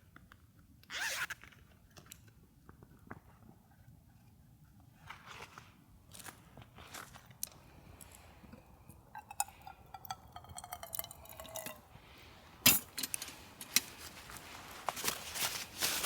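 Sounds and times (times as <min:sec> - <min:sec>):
metal cookware clinking: 0:09.2 - 0:11.8.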